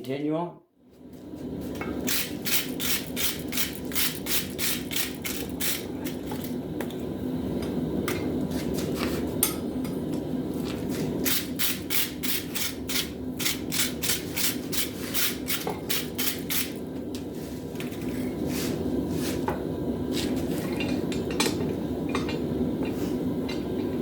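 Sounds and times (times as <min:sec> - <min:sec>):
hammer striking hot steel: 0:09.4 - 0:10.1.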